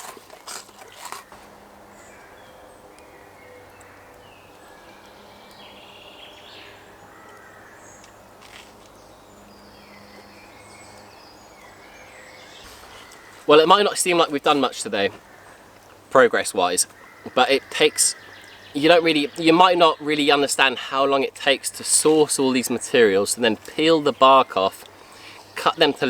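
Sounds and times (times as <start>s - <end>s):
biting into crunchy toast: 0.0s - 1.6s
birds chirping and calling: 0.0s - 26.0s.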